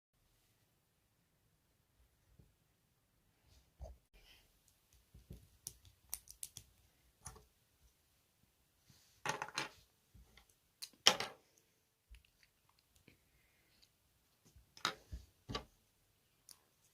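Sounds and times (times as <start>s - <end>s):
plastic pieces clicking and tapping: 5.3s - 7.4s.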